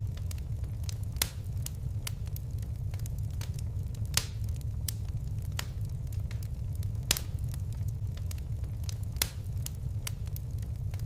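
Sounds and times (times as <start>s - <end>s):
fire crackling: 0.0s - 11.0s
low rumble of burning: 0.0s - 11.0s.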